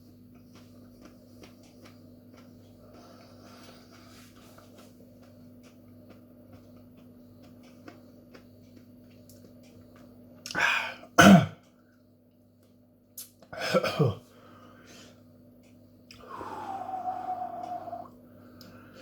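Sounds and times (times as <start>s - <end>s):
man coughing: 10.6s - 11.6s, 13.6s - 14.2s.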